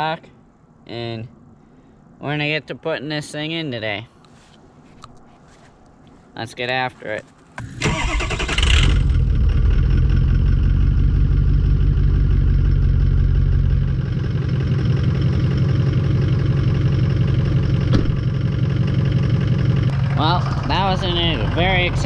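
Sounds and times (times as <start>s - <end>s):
diesel engine idling: 7.7s - 22.0s.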